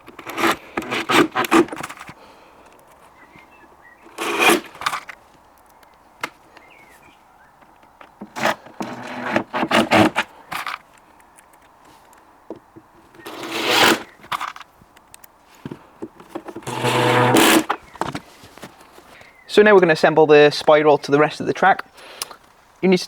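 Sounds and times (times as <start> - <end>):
scraping and knocking of parts: 0.0 - 3.2, 4.0 - 6.4, 7.6 - 19.2.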